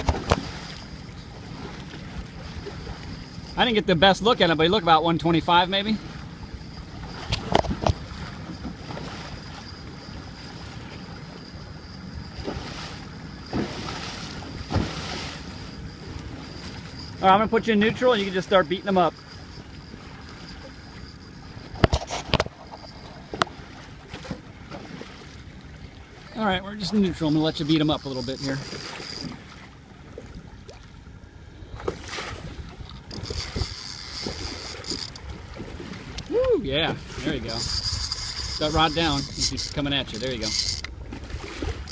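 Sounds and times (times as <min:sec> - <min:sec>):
wind noise on microphone: 0:00.0 - 0:00.8, 0:31.6 - 0:41.9
wind rumbling on microphone: 0:00.0 - 0:24.9, 0:30.0 - 0:41.9
faint high whine: 0:00.0 - 0:31.8, 0:32.4 - 0:41.9
boat motor running: 0:00.0 - 0:41.9
water sounds: 0:00.0 - 0:41.9.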